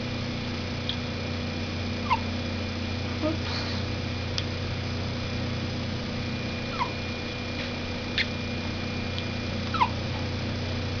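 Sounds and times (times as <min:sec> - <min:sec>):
dog hiccuping: 0:02.0 - 0:02.3, 0:06.7 - 0:07.0, 0:09.7 - 0:10.0.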